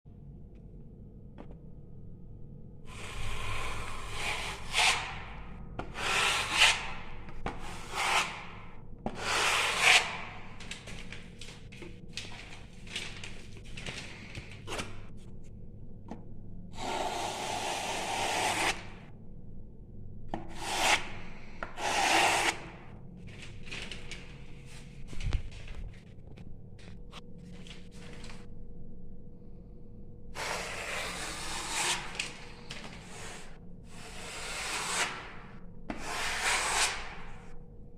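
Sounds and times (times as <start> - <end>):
rubbing strokes on wall: 2.9 - 5.3, 5.9 - 8.5, 9.2 - 10.4, 30.4 - 35.3, 35.9 - 37.3.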